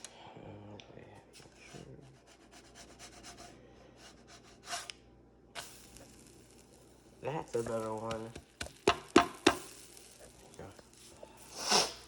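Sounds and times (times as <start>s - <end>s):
pancakes crackling in a pan: 5.6s - 12.0s
brief loud hisses: 11.5s - 12.0s.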